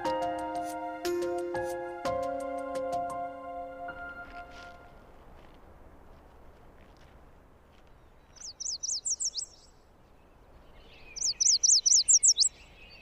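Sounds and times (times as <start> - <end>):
songbird singing: 7.7 - 13.0.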